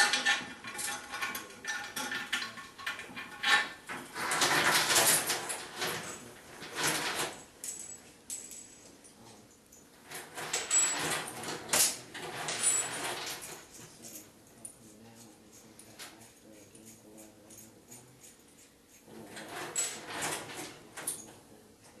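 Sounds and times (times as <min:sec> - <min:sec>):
bolts and nuts clinking: 0:00.0 - 0:14.8, 0:19.5 - 0:21.4.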